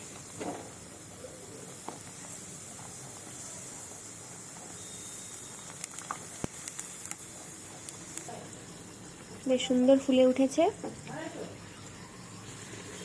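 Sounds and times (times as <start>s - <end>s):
oil popping and crackling: 0.0s - 9.5s
deep-frying sizzle: 0.0s - 13.0s.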